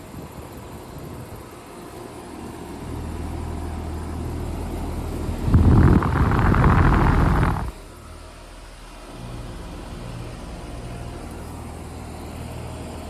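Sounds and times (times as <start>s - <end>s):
heat pump units humming: 0.0s - 13.0s
loud rushing noise: 5.4s - 7.8s.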